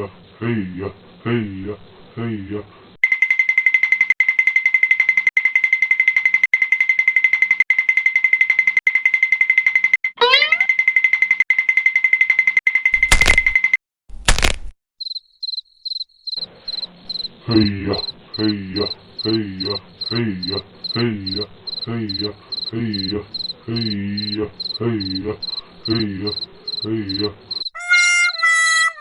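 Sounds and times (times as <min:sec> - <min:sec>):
crickets chirping: 0:15.0 - 0:27.7.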